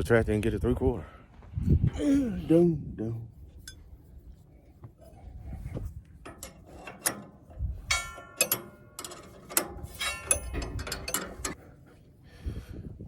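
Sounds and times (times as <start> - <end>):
steel hand tools clanking: 6.3 - 11.6.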